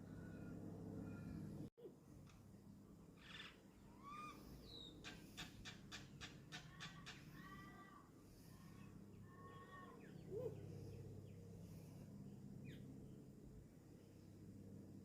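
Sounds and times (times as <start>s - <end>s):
faint bird chirps: 0.0s - 1.7s, 3.2s - 7.8s
low steady hum: 0.0s - 5.4s, 6.4s - 15.0s.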